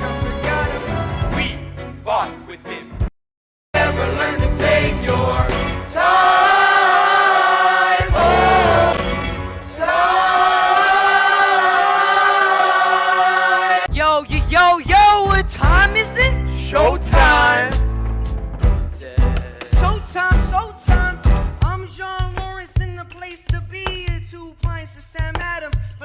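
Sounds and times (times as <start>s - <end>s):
choir singing: 3.8s - 13.9s, 16.6s - 17.8s.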